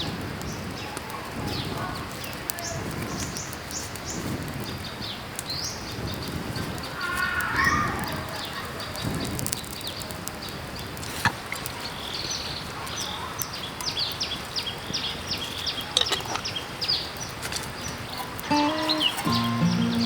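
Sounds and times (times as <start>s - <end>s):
bird chirping: 17.8s - 20.0s.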